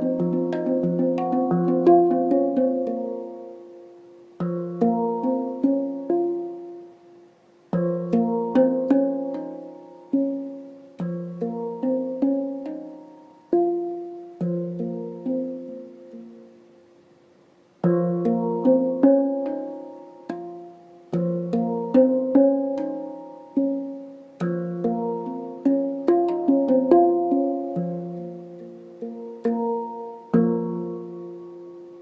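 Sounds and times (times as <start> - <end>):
handpan notes ringing: 0.0 - 16.7, 17.8 - 32.0.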